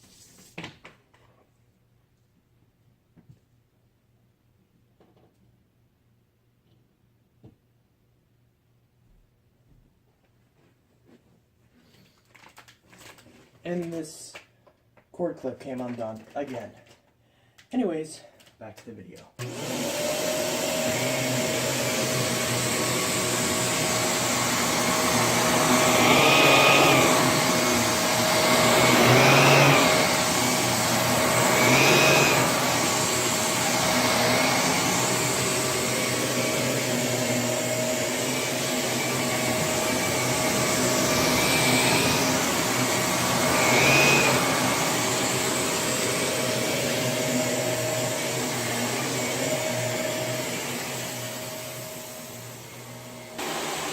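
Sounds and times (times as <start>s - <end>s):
vacuum cleaner running: 19.4s - 53.9s.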